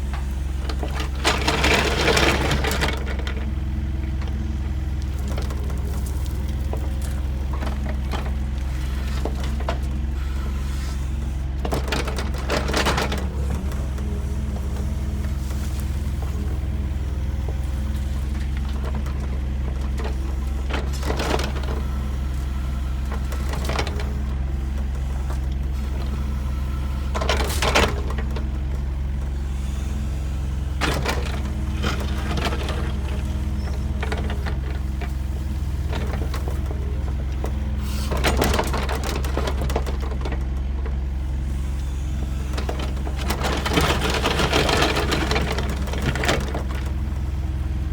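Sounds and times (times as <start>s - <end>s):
diesel engine of heavy machinery: 0.0s - 47.9s
dirt and rock scraping and clattering: 0.8s - 10.3s, 30.7s - 40.4s, 42.5s - 47.0s.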